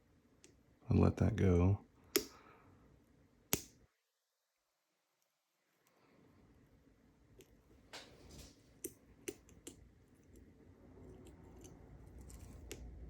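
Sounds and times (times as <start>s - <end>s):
soft handling noise: 7.4s - 13.0s.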